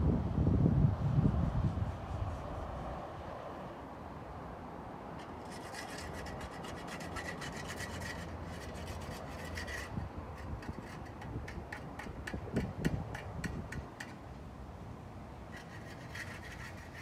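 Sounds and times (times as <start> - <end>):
rhythmic rasping strokes: 5.2 - 14.2.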